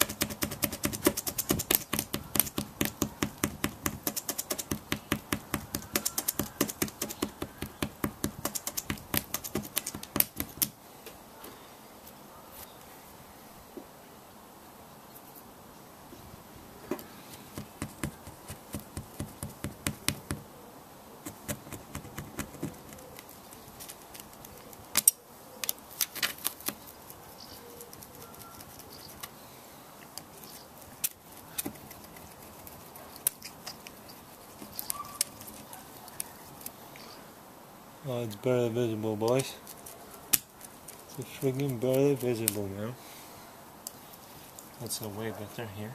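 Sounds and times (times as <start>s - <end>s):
sharp clicks and taps: 0.0s - 10.8s, 21.2s - 23.3s.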